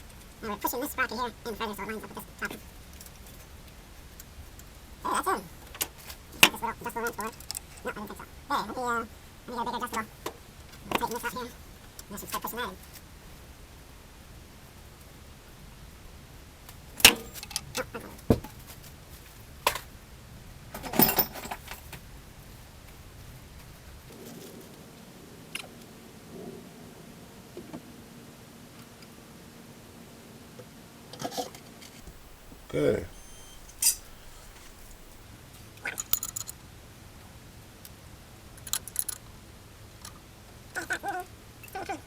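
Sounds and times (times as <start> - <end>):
metal hand tools clinking: 21.0 - 21.6, 32.0 - 35.2
metallic clicks of hand tools: 33.5 - 35.2.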